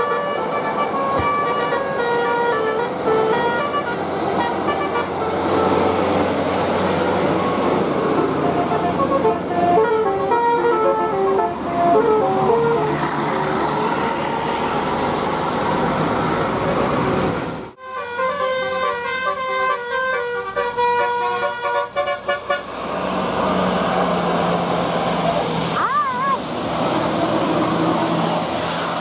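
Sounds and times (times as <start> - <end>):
bus horn playing melody: 0.0 - 14.8, 17.8 - 22.8
road noise: 0.0 - 29.0.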